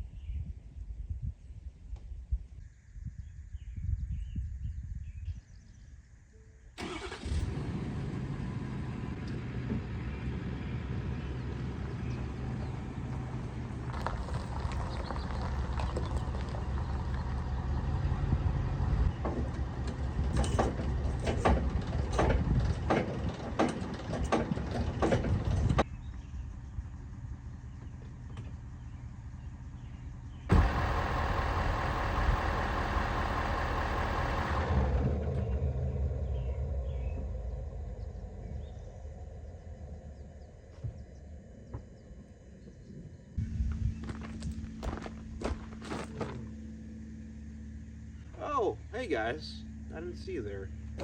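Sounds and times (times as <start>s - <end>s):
skid steer diesel engine running: 6.8s - 40.7s, 43.4s - 51.0s
sharp knocks and clanks: 19.2s - 25.8s.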